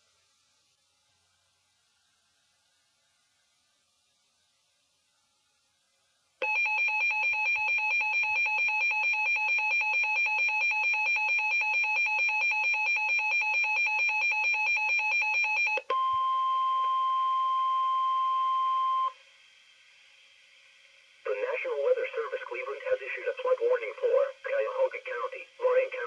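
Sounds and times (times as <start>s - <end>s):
rapidly pulsing alarm beep: 6.4s - 15.8s
steady alarm tone: 6.4s - 15.8s.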